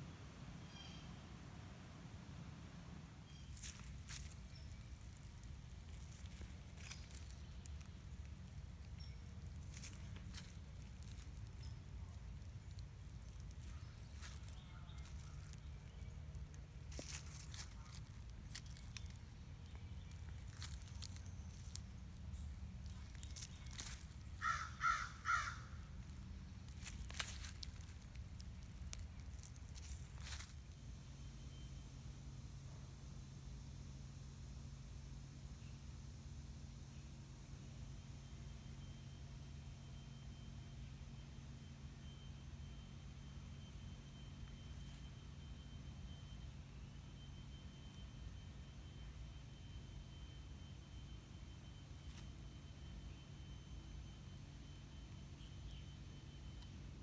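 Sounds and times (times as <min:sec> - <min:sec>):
clicks and crackles: 0:03.6 - 0:24.5, 0:26.0 - 0:30.8.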